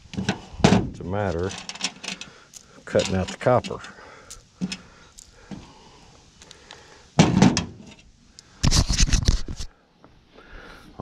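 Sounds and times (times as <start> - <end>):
scrap parts knocking and rattling: 0.1 - 5.7, 7.2 - 8.0
loud clunk: 7.2 - 7.8.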